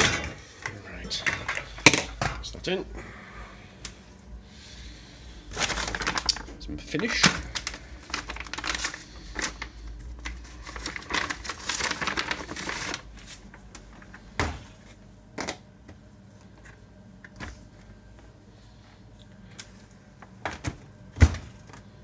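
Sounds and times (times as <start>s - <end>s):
crinkly rustling and rattling: 0.0s - 2.8s, 3.7s - 15.0s.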